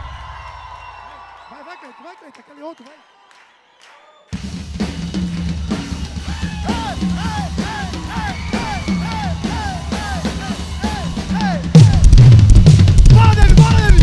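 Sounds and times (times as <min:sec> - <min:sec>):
drum hits: 0:04.4 - 0:14.0
live band playing: 0:04.4 - 0:14.0.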